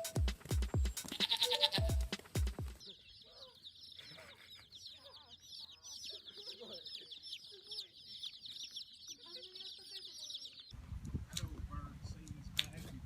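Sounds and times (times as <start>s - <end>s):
high-pitched chirping: 0.8s - 10.8s
chickens clucking: 1.0s - 10.8s.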